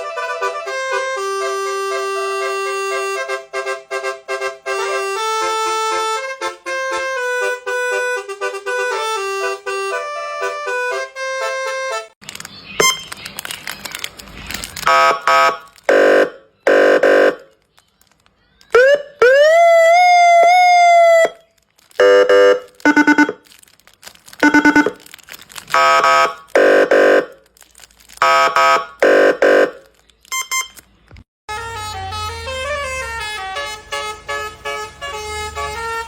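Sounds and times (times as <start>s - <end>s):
multi-tone horn playing a tune: 0.0s - 12.1s, 14.8s - 17.6s, 22.0s - 23.4s, 24.4s - 25.0s, 25.7s - 27.4s, 28.2s - 29.9s, 31.5s - 36.0s.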